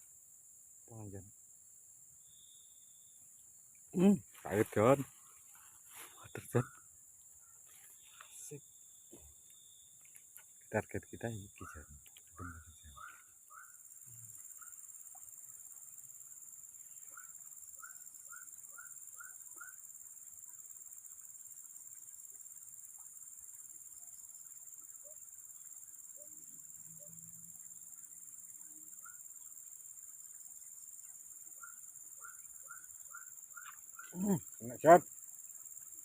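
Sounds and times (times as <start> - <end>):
high-pitched insect chorus: 0.0 - 36.0
short chirping calls: 7.5 - 15.2, 31.6 - 35.0.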